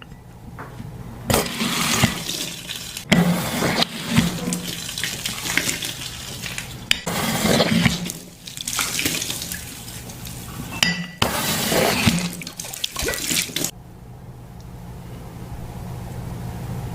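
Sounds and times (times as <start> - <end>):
tap water running and splashing: 1.3 - 13.7
steady low hum: 12.1 - 16.9.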